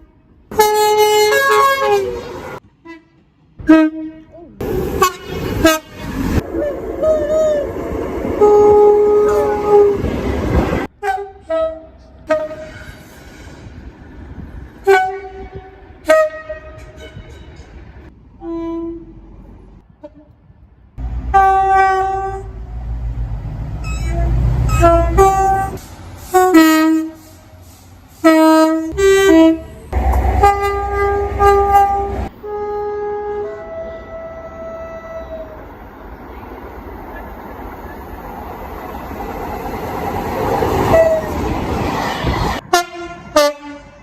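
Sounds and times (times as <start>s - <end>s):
train horn blasts: 0.0s - 4.4s, 5.0s - 7.7s, 8.4s - 10.1s, 10.9s - 13.0s, 14.8s - 17.7s, 18.4s - 19.2s, 19.9s - 22.7s, 23.8s - 27.4s, 28.2s - 35.7s, 40.9s - 41.4s, 42.6s - 44.0s
train running noise: 0.0s - 44.0s.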